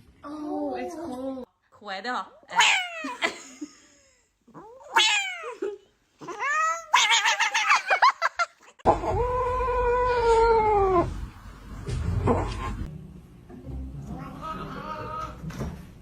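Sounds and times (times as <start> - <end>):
cat yowling: 2.5 - 3.2, 4.6 - 5.6, 6.2 - 7.9, 9.0 - 11.1
cat meowing: 4.6 - 5.6, 6.2 - 7.7.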